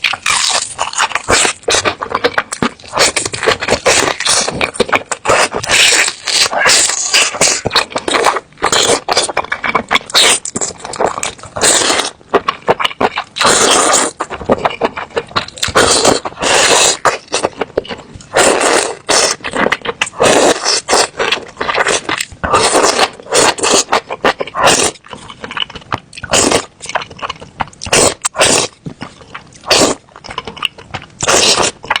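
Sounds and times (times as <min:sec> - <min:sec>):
loud chewing and mouth noises: 0:00.0 - 0:32.0.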